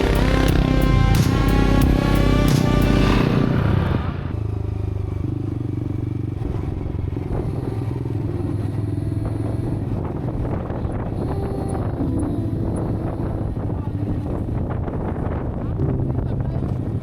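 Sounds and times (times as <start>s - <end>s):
background music: 0.0s - 4.4s.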